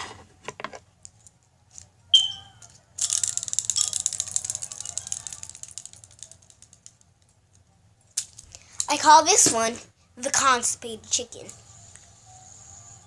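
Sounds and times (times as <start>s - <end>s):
fidget spinner bearing rattling: 2.2s - 7.6s.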